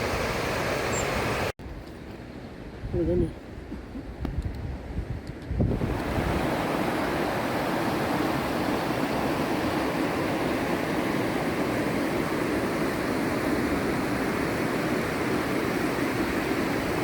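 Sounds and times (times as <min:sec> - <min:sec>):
fast-flowing water rushing: 0:00.0 - 0:01.5, 0:05.8 - 0:17.0.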